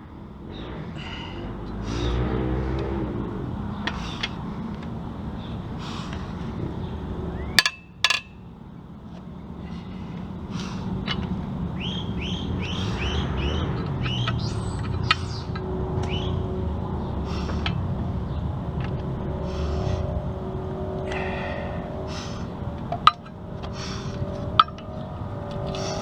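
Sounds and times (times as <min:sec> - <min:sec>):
low background rumble: 0:00.0 - 0:26.0
metal tools clinking: 0:07.6 - 0:08.3
bird chirping: 0:11.8 - 0:17.6.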